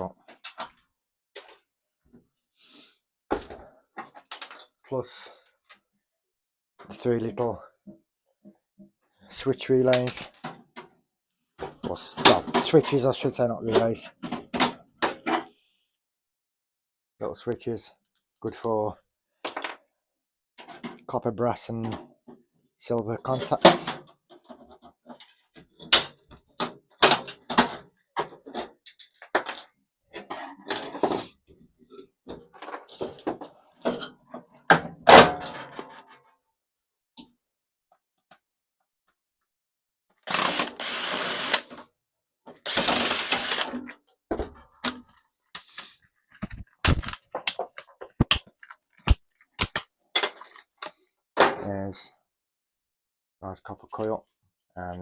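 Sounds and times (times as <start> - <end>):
power tool running: 40.3 - 41.7, 42.7 - 43.7.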